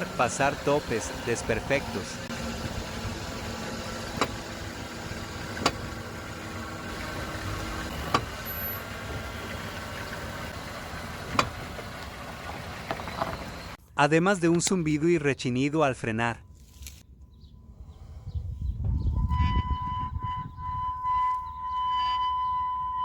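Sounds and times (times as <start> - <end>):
truck driving road noise: 0.0 - 13.8.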